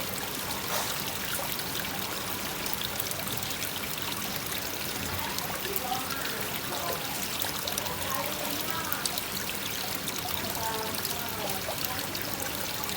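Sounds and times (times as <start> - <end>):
raindrops ticking on water: 0.0 - 12.9
waterfall splashing into pond: 0.0 - 12.9.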